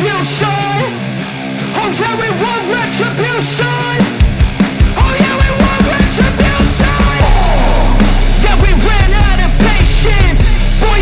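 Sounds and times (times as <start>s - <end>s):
music with drum beat: 3.4s - 11.0s
person singing: 5.0s - 11.0s
deep bass note: 6.2s - 11.0s.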